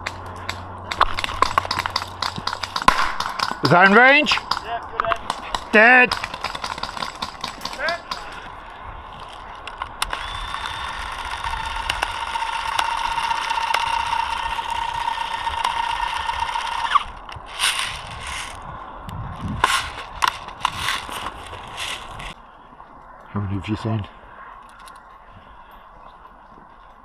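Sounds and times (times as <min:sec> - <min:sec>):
electric gun gearbox whining: 0:10.0 - 0:17.8.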